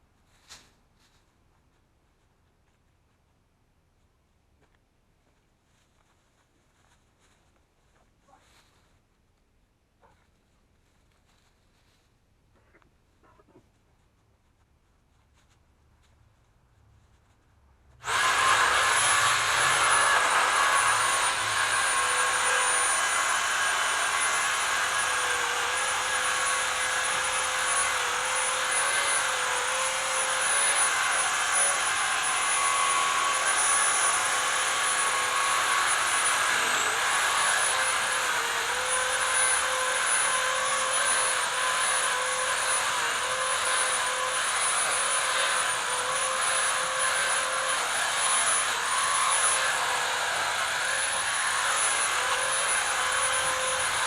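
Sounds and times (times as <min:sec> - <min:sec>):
chainsaw cutting wood: 0:18.0 - 0:54.0.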